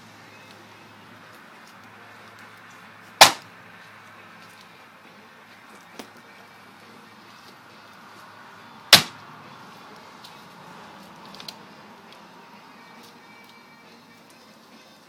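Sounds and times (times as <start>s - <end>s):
sharp loud crack: 3.2s - 3.5s, 8.9s - 9.2s.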